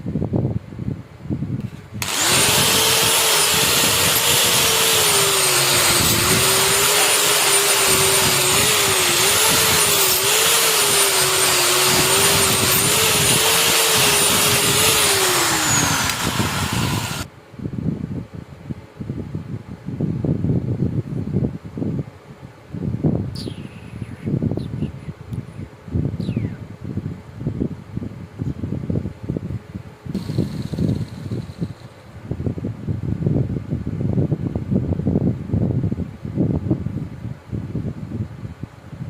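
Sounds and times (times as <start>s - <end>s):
power tool motor whining: 1.6s - 17.3s, 30.2s - 32.0s.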